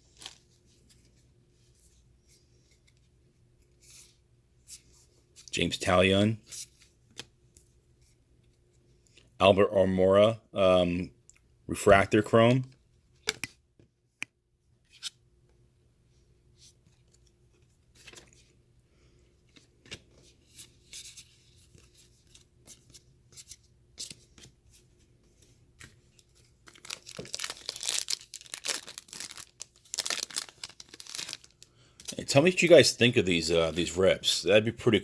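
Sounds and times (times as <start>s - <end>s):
wrapper crinkling: 0.1s - 0.5s, 26.6s - 32.4s
foil pack tearing: 26.7s - 31.6s.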